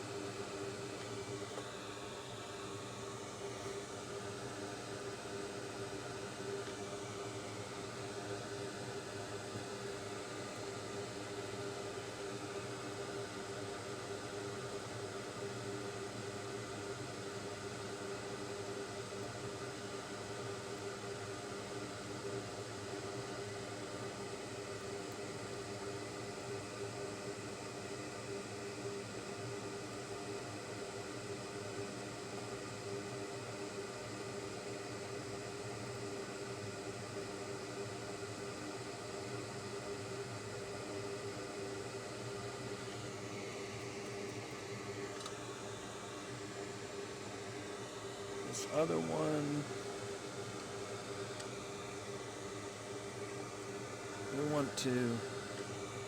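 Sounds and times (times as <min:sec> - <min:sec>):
small electric fan whirring: 0:00.0 - 0:56.0
electric fan humming: 0:47.7 - 0:56.0.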